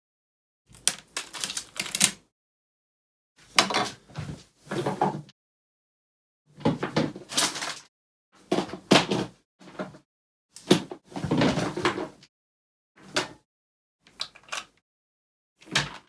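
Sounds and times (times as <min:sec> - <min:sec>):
hands handling hard objects: 0:00.7 - 0:02.2.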